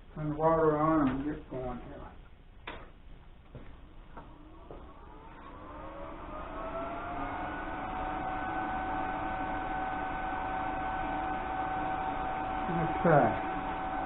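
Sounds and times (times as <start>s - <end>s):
machine motor whine: 4.2s - 14.0s.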